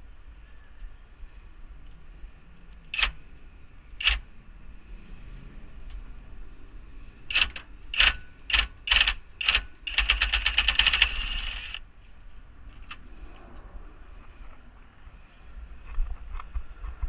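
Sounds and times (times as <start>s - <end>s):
ratchet wrench clicking: 3.0s - 3.2s, 4.0s - 4.2s, 7.3s - 11.8s.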